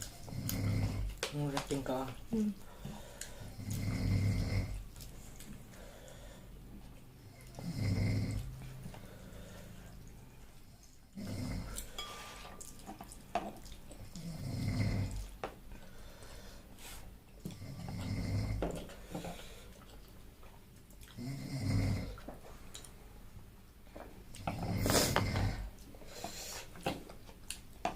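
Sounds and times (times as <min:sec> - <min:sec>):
person snoring: 0:00.3 - 0:01.1, 0:03.4 - 0:04.8, 0:07.6 - 0:09.8, 0:11.2 - 0:11.8, 0:14.2 - 0:15.2, 0:17.6 - 0:18.6, 0:21.2 - 0:22.2, 0:24.5 - 0:25.7.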